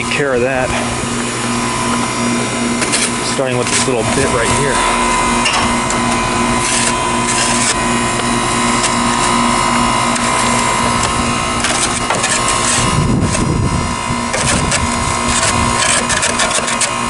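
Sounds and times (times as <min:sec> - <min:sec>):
heat pump humming: 0:00.0 - 0:17.0
snow being scraped and brushed: 0:06.5 - 0:07.8, 0:11.6 - 0:13.4.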